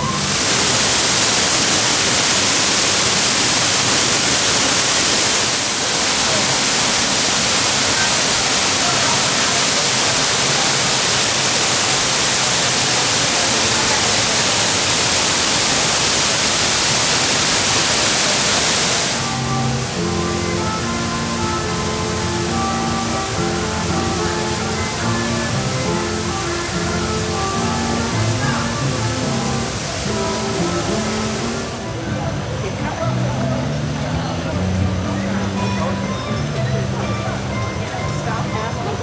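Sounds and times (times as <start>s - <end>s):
rushing falling water: 0.0s - 38.0s
background music: 19.2s - 39.0s.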